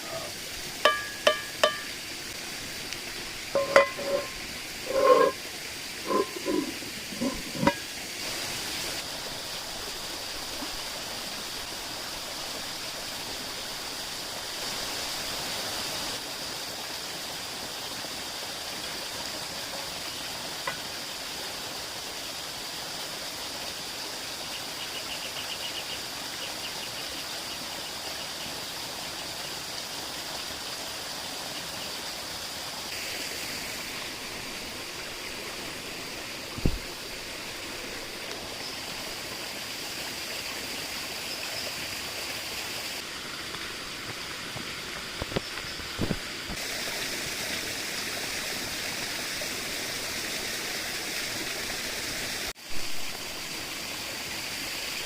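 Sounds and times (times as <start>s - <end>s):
stream rushing: 0.0s - 27.9s, 28.6s - 55.0s
short clinks: 3.6s - 5.4s.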